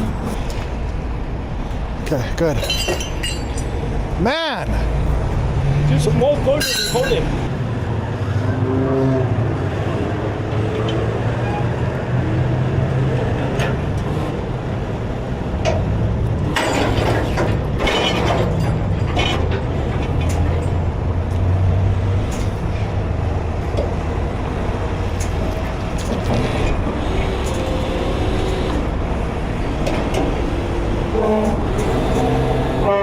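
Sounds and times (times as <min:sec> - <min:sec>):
metal clanks and scraping: 0:02.4 - 0:03.8, 0:06.5 - 0:07.3, 0:16.5 - 0:20.8
diesel engine running: 0:13.8 - 0:33.0.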